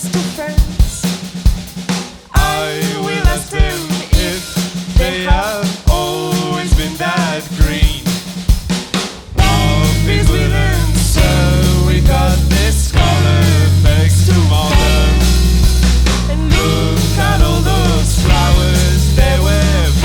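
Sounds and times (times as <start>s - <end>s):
drums: 0.0s - 20.0s
live rock band: 0.0s - 20.0s
heavy sustained bass: 9.4s - 20.0s.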